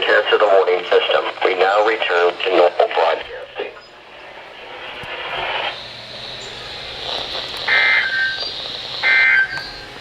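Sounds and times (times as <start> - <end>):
radio hiss: 0.0 - 10.0
digital data bursts: 5.3 - 10.0.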